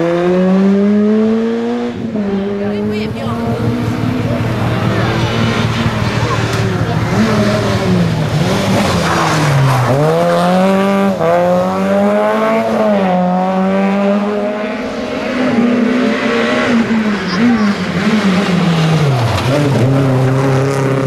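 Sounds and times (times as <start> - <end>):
rally car engine revving: 0.0 - 21.0.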